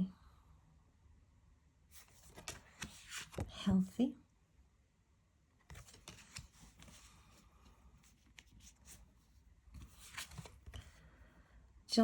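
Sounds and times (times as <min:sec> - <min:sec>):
cards rustling and clicking: 0:02.0 - 0:03.5, 0:05.7 - 0:09.1, 0:09.8 - 0:11.0.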